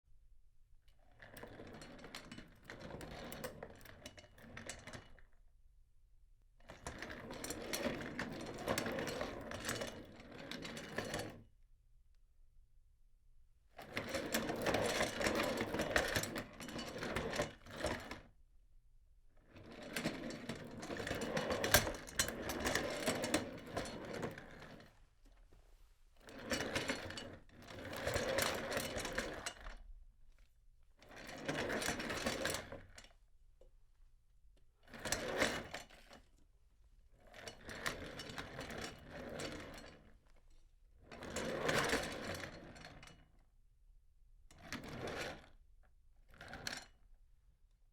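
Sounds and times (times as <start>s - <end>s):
office chair casters rolling: 6.8s - 11.4s, 13.8s - 18.2s, 19.6s - 24.9s, 26.2s - 29.7s, 31.1s - 32.8s, 34.9s - 36.2s, 41.2s - 43.1s.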